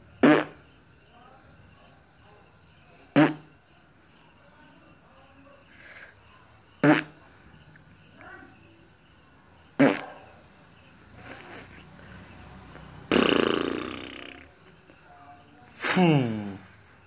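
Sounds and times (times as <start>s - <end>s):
person making mouth noises: 6.8s - 7.1s, 9.8s - 10.0s, 13.1s - 14.5s.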